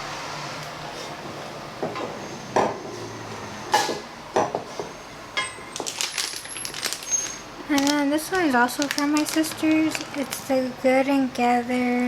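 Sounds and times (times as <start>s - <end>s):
dishes clattering on a counter: 1.8s - 2.8s, 3.7s - 5.8s.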